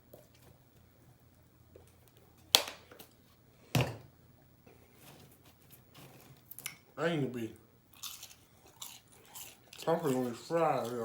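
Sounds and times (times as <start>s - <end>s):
chewing: 7.9s - 11.0s
crunching bites of fried chicken: 7.9s - 11.0s.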